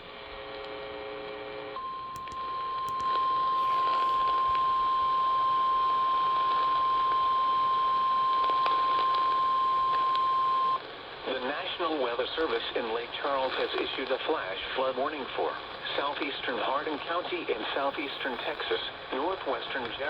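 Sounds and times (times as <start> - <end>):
radio static: 3.5 - 4.8, 11.2 - 20.0.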